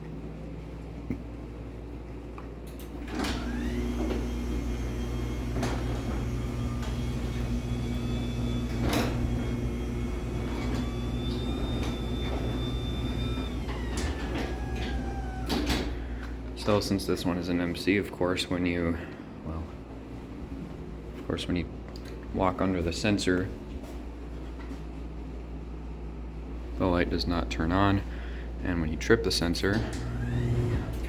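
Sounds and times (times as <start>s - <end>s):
garage door opener motor whine: 2.6s - 16.8s, 29.6s - 31.0s.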